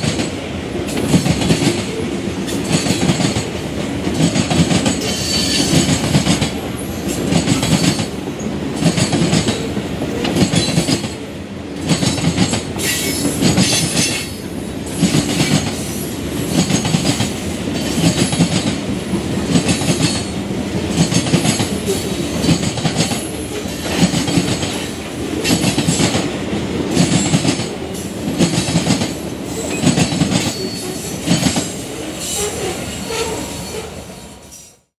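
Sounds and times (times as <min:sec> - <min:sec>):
train wheels clacking over rail joints: 0:00.0 - 0:11.2, 0:11.8 - 0:32.7
faint high wheel squeal: 0:30.5 - 0:31.0.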